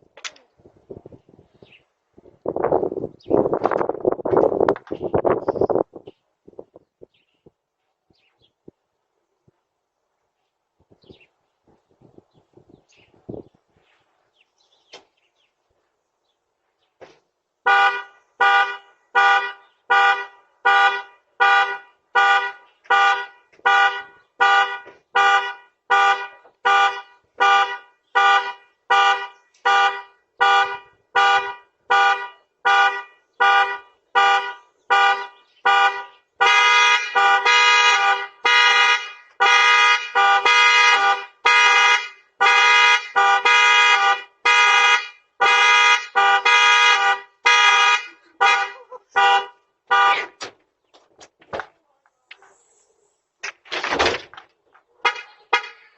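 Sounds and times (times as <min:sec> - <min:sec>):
car alarm horn honking: 0:17.7 - 0:50.4.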